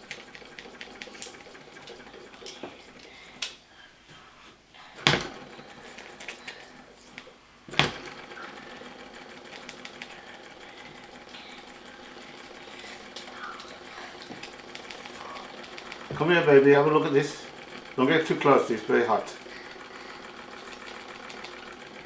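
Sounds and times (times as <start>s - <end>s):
model steam engine ticking: 8.0s - 22.0s.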